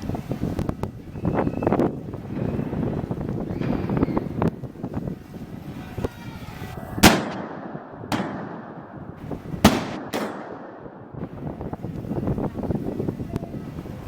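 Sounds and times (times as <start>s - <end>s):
explosive bangs with echo: 7.0s - 11.6s.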